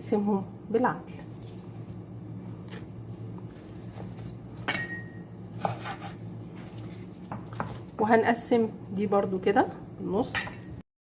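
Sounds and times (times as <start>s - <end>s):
steady low hum: 0.0s - 10.8s
dishes clinking: 4.6s - 5.2s, 10.3s - 10.8s.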